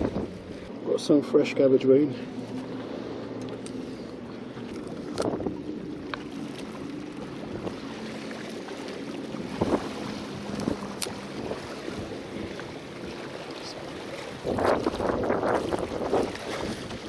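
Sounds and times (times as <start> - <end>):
wind on microphone: 0.0 - 0.4, 5.1 - 5.7, 9.4 - 13.2, 14.3 - 17.0
low engine hum: 0.0 - 17.0
water washing: 2.1 - 17.0.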